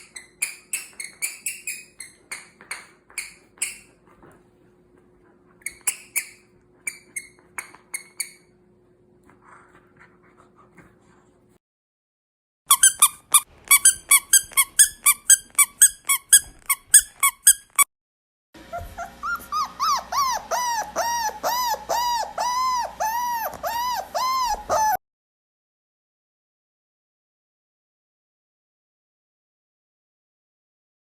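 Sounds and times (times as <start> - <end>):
dog yipping: 0.0 - 4.0, 5.6 - 8.5, 12.7 - 17.9, 18.6 - 25.0
dog whining: 18.6 - 25.0.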